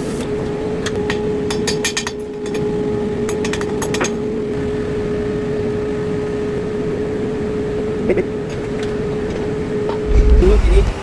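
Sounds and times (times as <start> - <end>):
steady machinery hum: 9.7 - 11.0.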